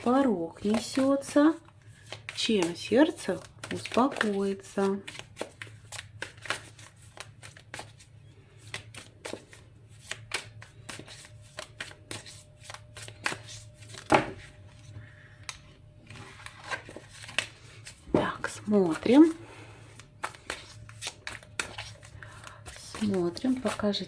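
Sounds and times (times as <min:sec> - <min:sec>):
cards being shuffled: 0:00.5 - 0:24.0
steady low hum: 0:08.1 - 0:24.0.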